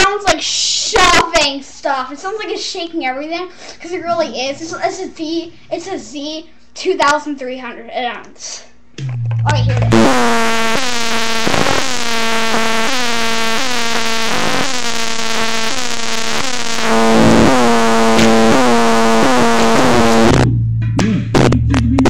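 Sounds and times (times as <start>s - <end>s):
electronic music through speakers: 9.0s - 22.0s.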